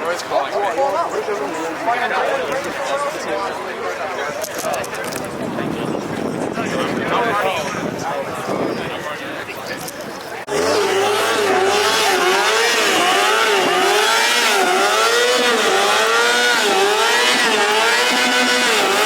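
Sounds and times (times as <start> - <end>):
car engine revving: 10.5 - 19.0.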